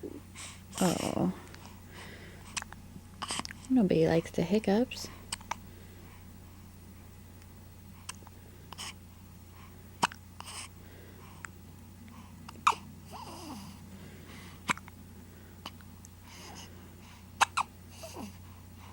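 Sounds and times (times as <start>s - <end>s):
soft breathing: 0.0s - 7.2s, 7.8s - 18.9s
baby hiccuping: 12.6s - 12.8s, 17.4s - 17.7s.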